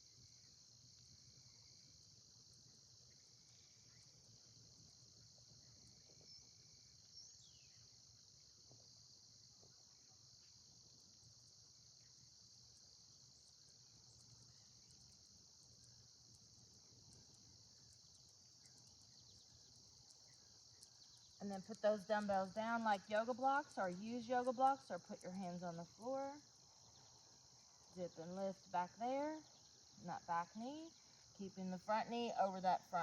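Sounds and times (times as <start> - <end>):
insects chirping: 0.0 - 33.0
faint bird chirps: 5.6 - 7.9.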